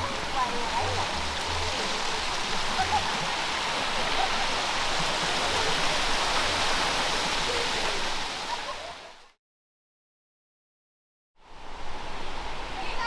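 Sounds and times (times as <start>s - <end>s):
flowing water rushing: 0.0s - 9.4s, 11.4s - 13.0s.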